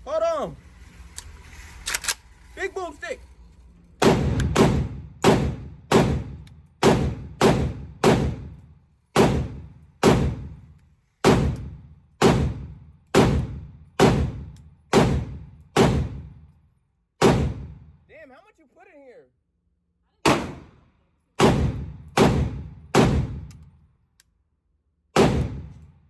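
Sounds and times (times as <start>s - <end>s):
gunshots with ringing echo: 4.0s - 10.6s, 11.2s - 16.3s, 17.2s - 17.8s, 20.3s - 23.5s, 25.2s - 25.8s.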